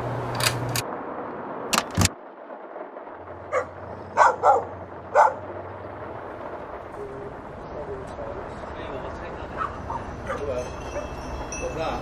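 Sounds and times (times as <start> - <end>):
dog barking: 3.5 - 5.5, 9.5 - 11.2.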